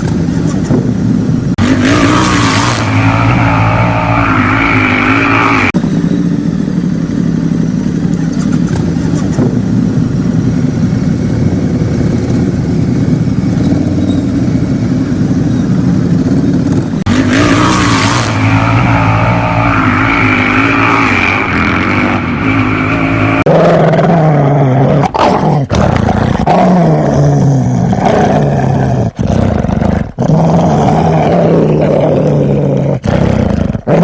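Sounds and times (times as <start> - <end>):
engine running loudly: 0.0 - 26.8.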